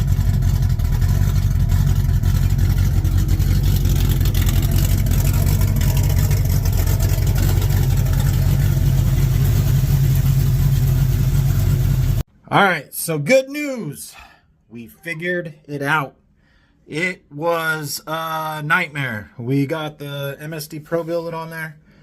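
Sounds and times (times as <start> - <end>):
engine running steadily: 0.0 - 12.2.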